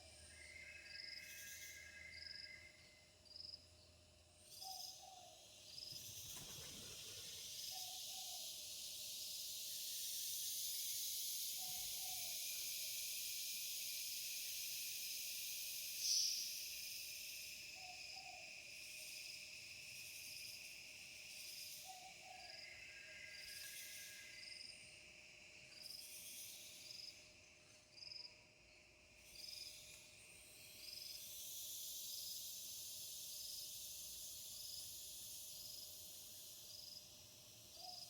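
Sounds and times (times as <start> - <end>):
night insects buzzing and chirping: 0.0 - 38.0.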